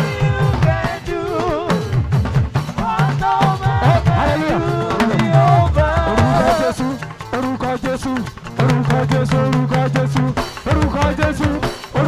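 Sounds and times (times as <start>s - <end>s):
drums and percussion beat: 0.0s - 12.0s
people singing: 0.0s - 12.0s.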